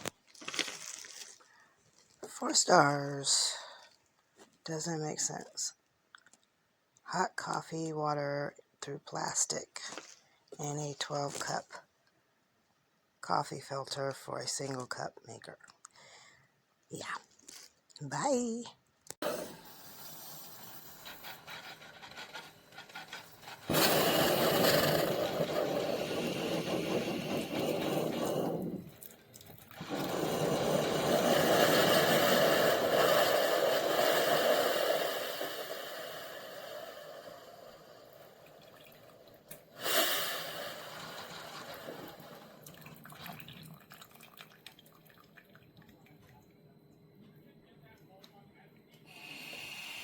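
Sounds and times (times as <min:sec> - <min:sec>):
hiss of hot water and steam: 0:19.2 - 0:28.8, 0:29.8 - 0:38.6, 0:39.7 - 0:42.6
rasping mechanical noise: 0:19.2 - 0:29.1, 0:29.8 - 0:34.6
liquid trickling and dripping: 0:28.9 - 0:29.8, 0:38.4 - 0:39.7, 0:41.8 - 0:46.5.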